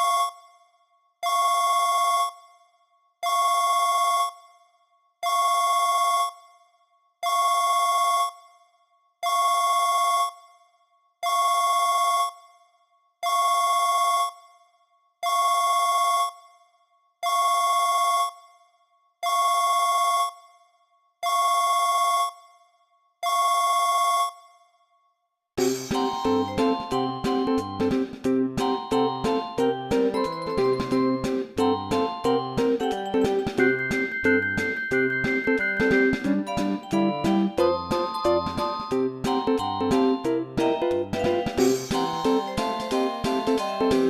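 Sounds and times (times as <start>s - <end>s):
buzzy phone ringtone: 28.7s - 40.4s.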